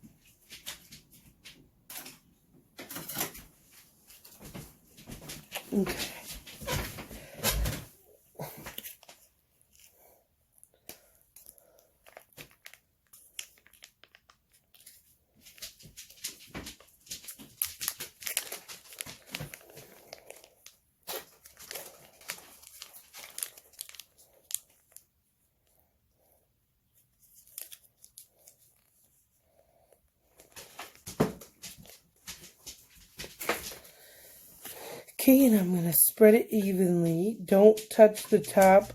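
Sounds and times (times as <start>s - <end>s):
plastic pouch crinkling and tearing: 8.5s - 25.8s, 26.9s - 32.0s.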